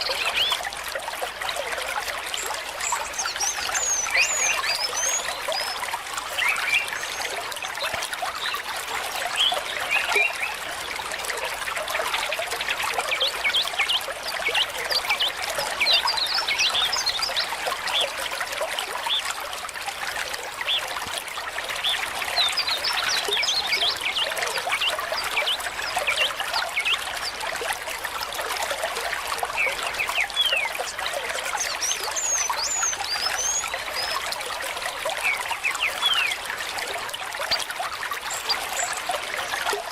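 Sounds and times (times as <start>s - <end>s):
water trickling: 0.0s - 39.9s
small birds chirping: 21.7s - 27.4s, 29.4s - 34.3s.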